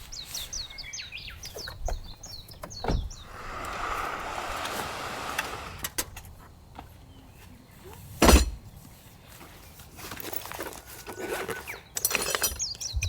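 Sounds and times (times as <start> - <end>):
bird chirping: 0.0 - 4.2, 11.4 - 13.0
soft rushing noise: 2.9 - 6.0.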